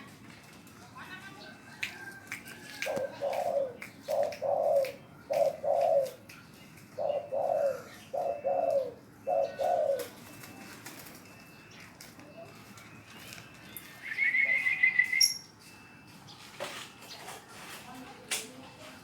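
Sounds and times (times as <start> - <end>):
dove cooing: 2.7 - 11.3.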